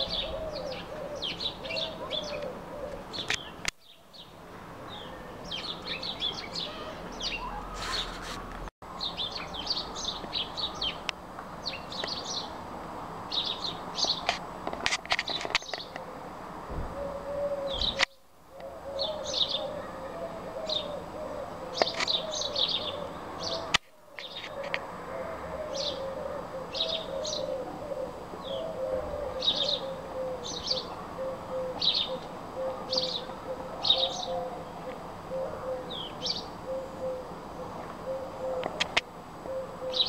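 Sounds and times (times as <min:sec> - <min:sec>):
bird cooing notes: 0:00.0 - 0:03.3, 0:05.1 - 0:08.3, 0:16.9 - 0:40.0
birds chirping high: 0:00.0 - 0:12.6, 0:13.2 - 0:14.4, 0:15.2 - 0:16.2, 0:17.0 - 0:24.8, 0:25.5 - 0:40.0.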